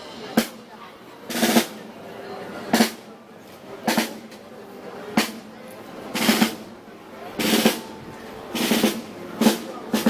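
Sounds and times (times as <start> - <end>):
snare drum rolls: 3.8 - 4.4, 6.2 - 6.6, 8.6 - 10.0.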